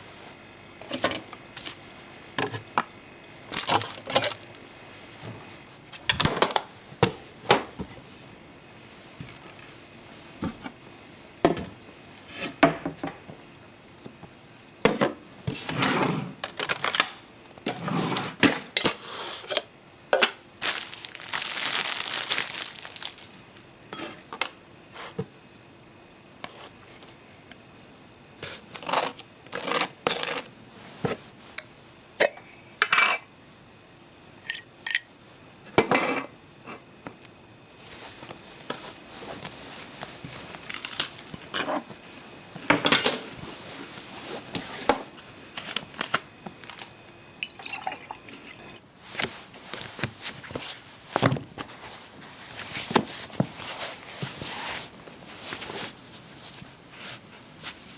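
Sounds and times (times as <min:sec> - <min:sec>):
rustling noise: 0:20.6 - 0:23.7, 0:37.8 - 0:42.6, 0:43.4 - 0:46.8, 0:49.0 - 0:57.9.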